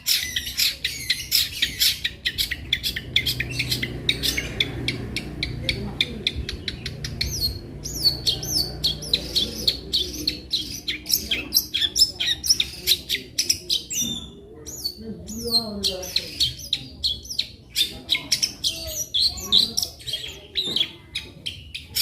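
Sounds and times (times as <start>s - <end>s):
shrike singing chirps and whistles: 6.0s - 20.9s.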